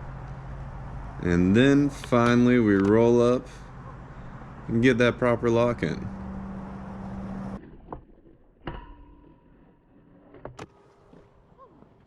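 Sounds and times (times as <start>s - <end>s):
low humming noise: 0.0s - 7.7s.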